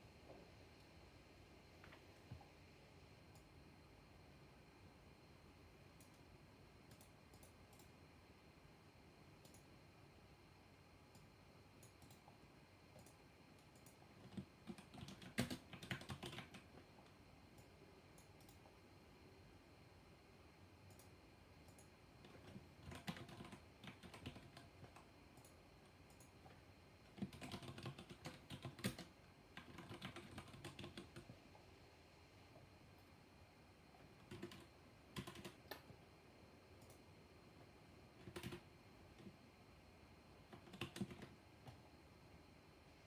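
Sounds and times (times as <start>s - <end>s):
mechanical keyboard typing: 13.0s - 16.8s, 21.7s - 26.4s, 27.0s - 31.3s, 34.2s - 35.9s, 38.2s - 39.3s, 40.5s - 41.8s.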